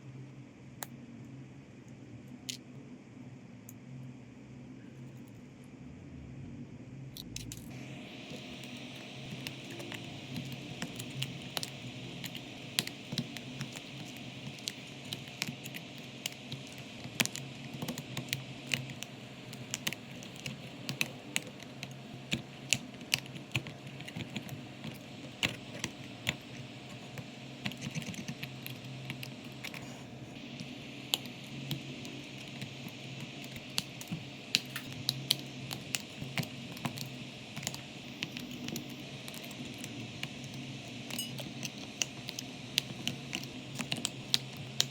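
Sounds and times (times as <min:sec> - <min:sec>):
steady low hum: 0:00.0 - 0:44.9
small tools clicking and tapping: 0:33.4 - 0:44.9.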